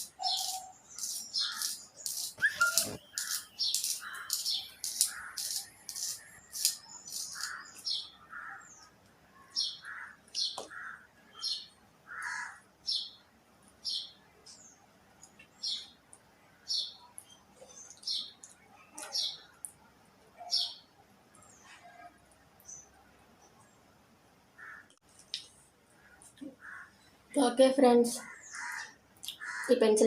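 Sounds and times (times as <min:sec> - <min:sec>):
pencil sharpener scraping squeaks: 0:00.0 - 0:07.7.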